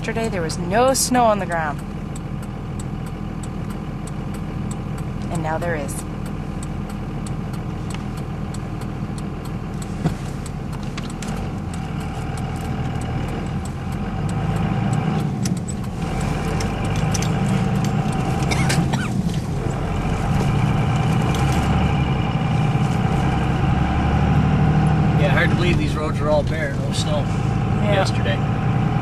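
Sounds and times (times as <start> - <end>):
light ticking: 0.0 - 22.7
car engine and tyre rumble: 0.0 - 29.0.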